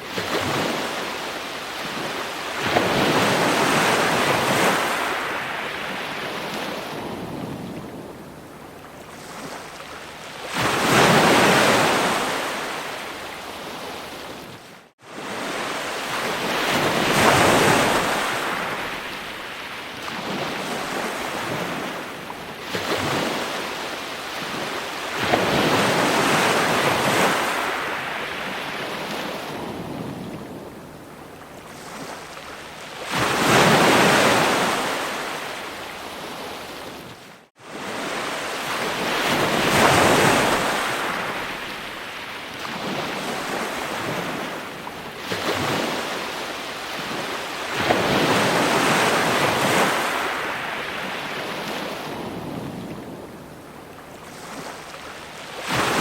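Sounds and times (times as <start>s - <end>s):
ocean waves breaking on shore: 0.0s - 56.0s.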